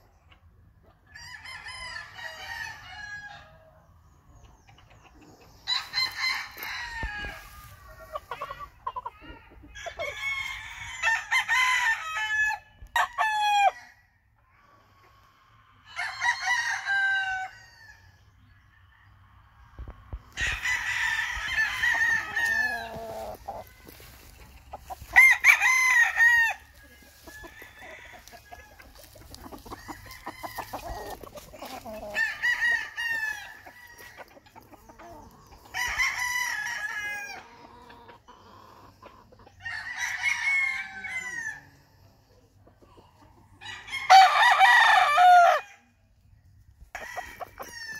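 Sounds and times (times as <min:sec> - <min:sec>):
rooster crowing: 0:20.4 - 0:24.3, 0:24.9 - 0:31.2, 0:43.7 - 0:45.8.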